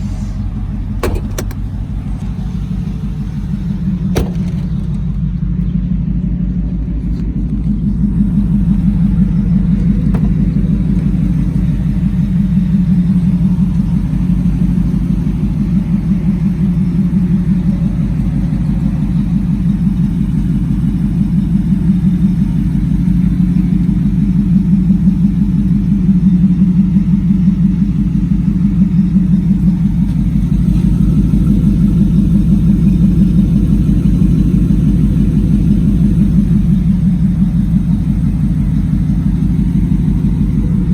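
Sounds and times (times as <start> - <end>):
truck engine idling: 0.0 - 40.9.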